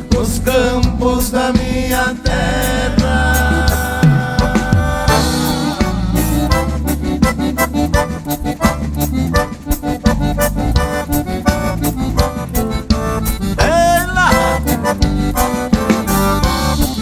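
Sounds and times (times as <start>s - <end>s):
accordion quick notes: 0.0s - 17.0s
steady bass notes: 0.0s - 17.0s.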